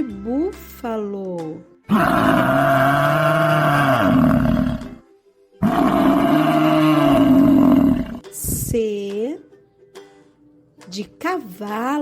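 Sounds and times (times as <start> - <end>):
buffalo bellowing: 1.9 - 5.0, 5.6 - 8.2.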